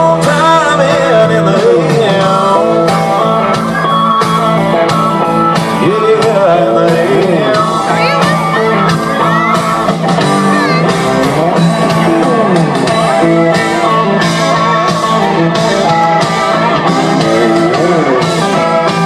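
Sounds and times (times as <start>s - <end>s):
drum beat and cymbals: 0.0s - 19.0s
electric guitar lead: 0.0s - 19.0s.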